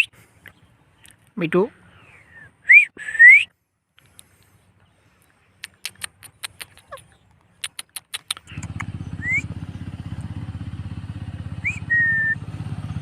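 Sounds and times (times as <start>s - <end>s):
parakeet clicks: 5.6s - 7.0s, 7.6s - 8.9s
low pulsing engine-like drone: 8.5s - 13.0s
parakeet whistling: 9.1s - 9.5s, 11.5s - 12.4s.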